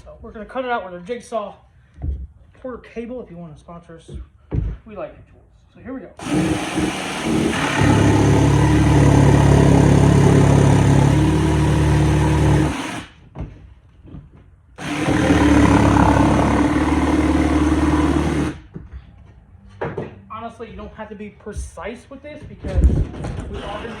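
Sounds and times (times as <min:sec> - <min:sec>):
jigsaw cutting wood: 0:06.2 - 0:13.1, 0:14.8 - 0:18.6.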